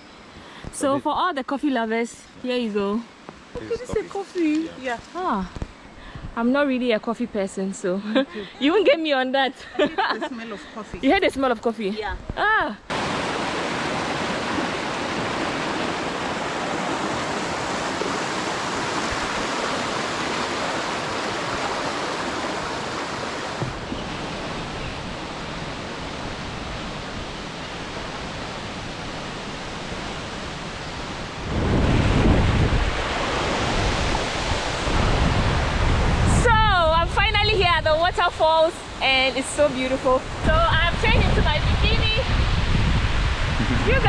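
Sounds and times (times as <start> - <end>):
waterfall roaring: 12.9 - 36.6.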